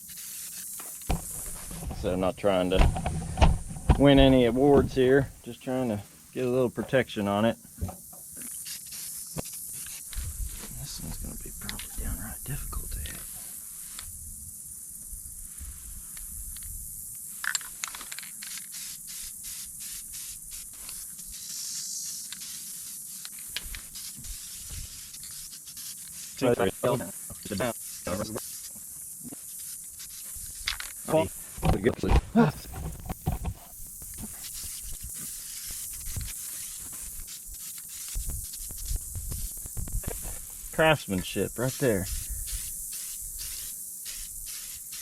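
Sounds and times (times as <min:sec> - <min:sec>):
aerosol paint can spraying: 0:00.0 - 0:05.5, 0:07.7 - 0:45.0
low thumps: 0:01.1 - 0:05.4.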